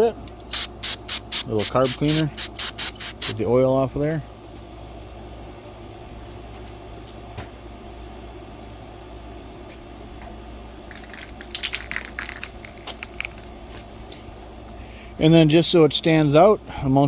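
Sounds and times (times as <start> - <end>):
low background hum: 0.0 - 17.0
small objects clicking and rattling: 10.9 - 13.8.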